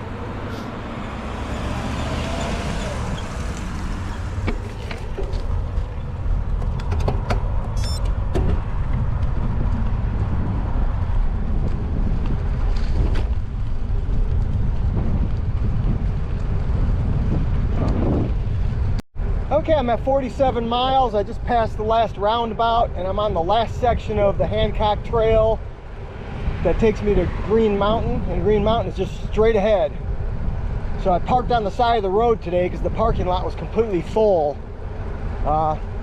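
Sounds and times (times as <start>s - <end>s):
bike tyre noise on pavement: 0.0s - 6.9s, 7.5s - 21.1s
wind buffeting microphone: 0.0s - 36.0s.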